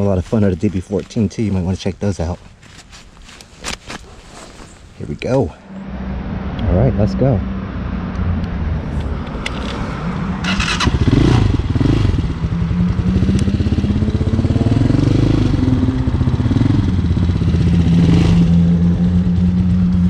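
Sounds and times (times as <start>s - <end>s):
dirt bike engine revving: 10.4s - 19.0s.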